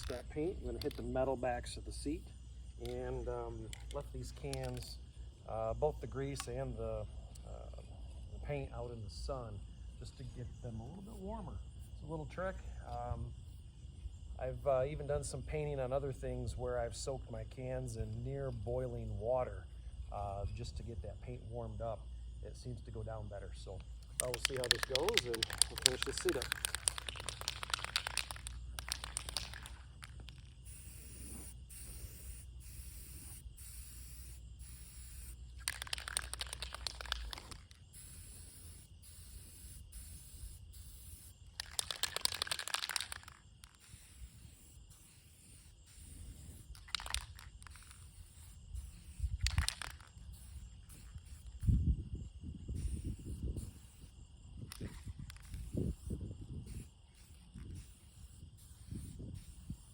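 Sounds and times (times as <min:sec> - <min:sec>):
aerosol spray can hissing: 0:24.0 - 0:51.8, 0:52.7 - 0:59.9.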